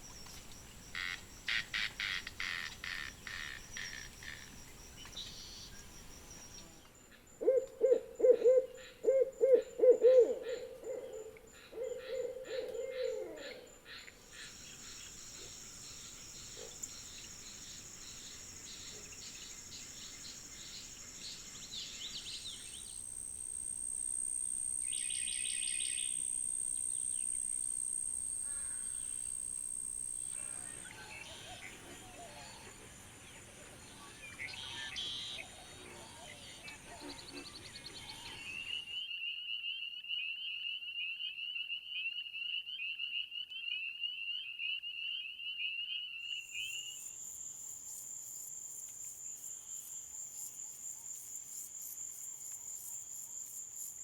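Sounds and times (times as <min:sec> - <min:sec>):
pulsing insect choruses: 0:00.0 - 0:06.8, 0:14.2 - 0:31.0
owl hooting: 0:07.4 - 0:14.5
high-pitched insect drone: 0:14.2 - 0:30.6.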